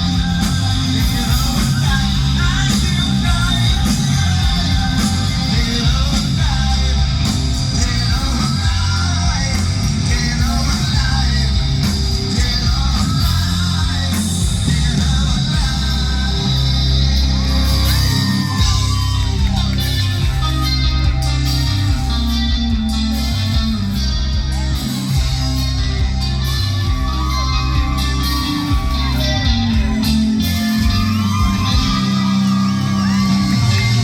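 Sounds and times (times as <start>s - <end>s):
live rock band playing: 0.0s - 34.0s
steady drum beat: 0.0s - 34.0s.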